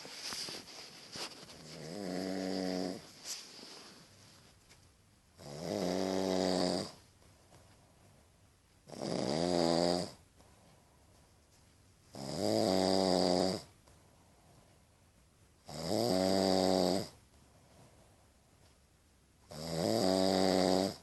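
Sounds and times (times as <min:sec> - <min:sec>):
loud snoring: 0:01.7 - 0:03.0, 0:05.4 - 0:07.0, 0:08.9 - 0:10.2, 0:12.1 - 0:13.7, 0:15.7 - 0:17.2, 0:19.5 - 0:21.0.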